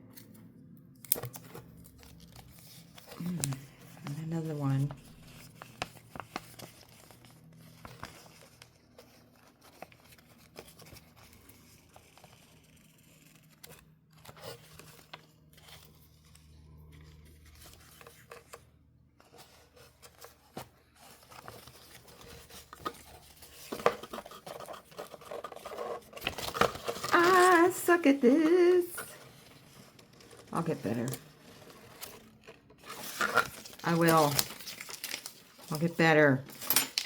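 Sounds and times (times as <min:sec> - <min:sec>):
plastic packaging crinkling: 0:21.0 - 0:37.0.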